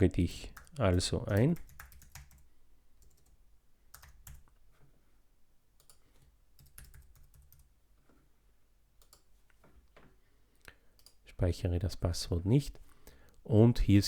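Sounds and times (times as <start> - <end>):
computer keyboard keystrokes: 0.6 - 2.4, 4.0 - 4.5, 5.8 - 7.7, 9.0 - 9.3.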